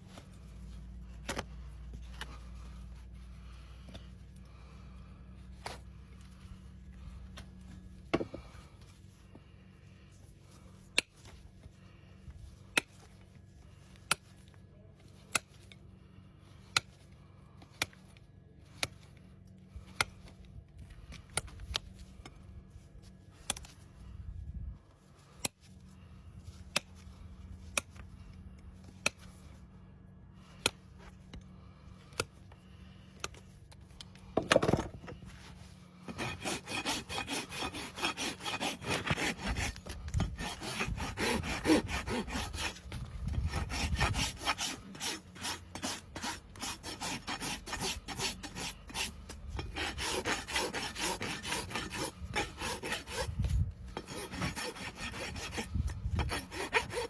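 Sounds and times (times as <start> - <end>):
hoof-trimming tool snapping: 23.4 - 23.8
rough scrape: 34.8 - 57.0.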